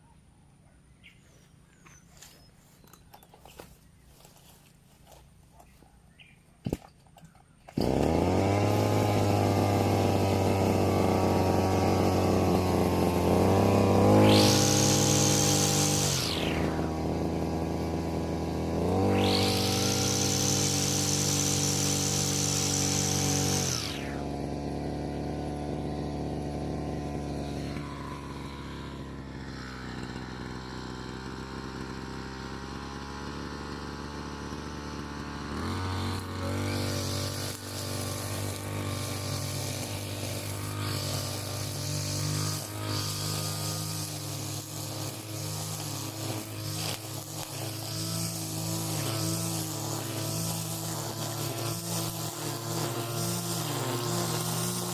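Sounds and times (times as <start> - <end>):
brush cutter running: 1.0 - 54.9.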